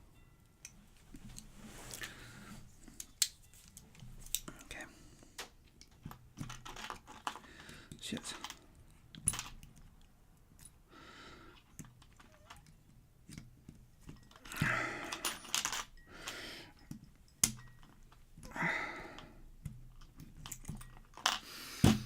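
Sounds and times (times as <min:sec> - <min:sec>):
metallic lock clicks and rattles: 0:05.8 - 0:07.5, 0:08.1 - 0:10.0, 0:19.9 - 0:21.4.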